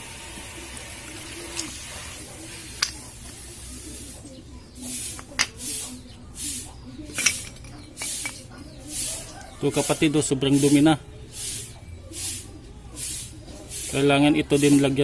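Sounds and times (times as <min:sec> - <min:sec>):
short hissing strokes: 0:03.7 - 0:06.7, 0:08.0 - 0:09.4, 0:10.6 - 0:14.7.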